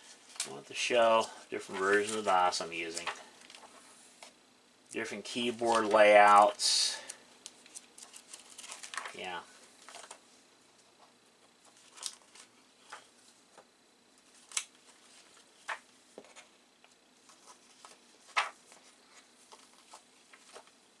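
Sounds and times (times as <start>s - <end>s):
paper and packaging rustling: 0.0s - 3.8s, 5.3s - 10.2s, 11.6s - 13.3s, 17.2s - 20.8s.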